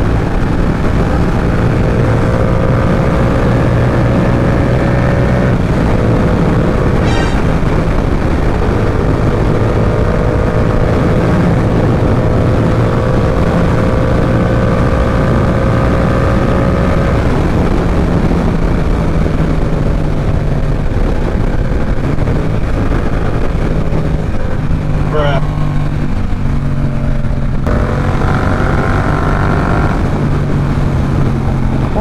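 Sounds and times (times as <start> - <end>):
motorcycle engine running: 0.0 - 32.0
wind rushing over microphone: 0.0 - 32.0.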